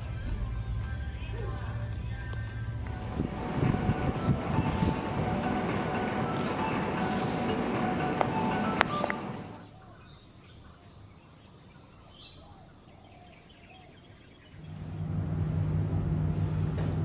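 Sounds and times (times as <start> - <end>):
low steady hum: 0.0 - 9.6, 14.6 - 17.0
faint bird chirps: 9.0 - 15.1.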